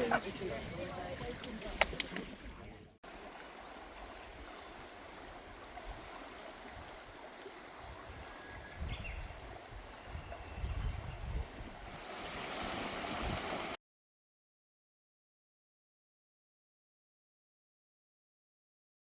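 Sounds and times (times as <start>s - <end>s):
stream running over stones: 0.0s - 13.8s.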